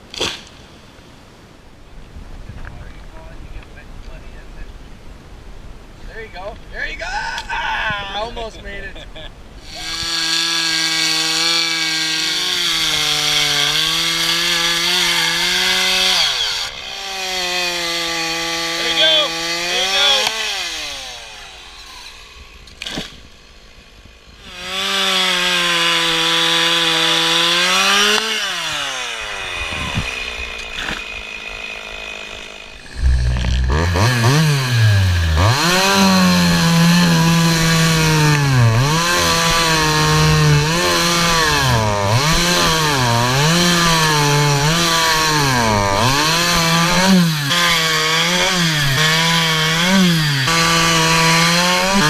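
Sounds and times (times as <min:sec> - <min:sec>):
chainsaw running: 0:09.6 - 0:23.2, 0:24.4 - 0:52.0.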